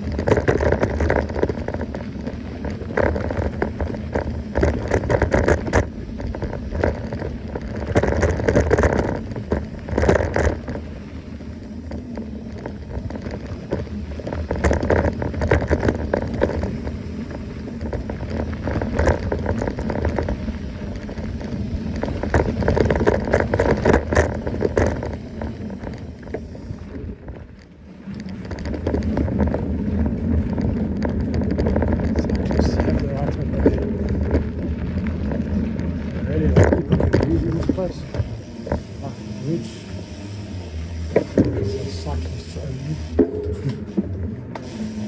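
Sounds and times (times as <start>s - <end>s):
bicycle tyre noise: 0.0s - 45.0s
bike rattles and clicks: 0.0s - 45.0s
wind rumble on microphone: 0.0s - 45.0s.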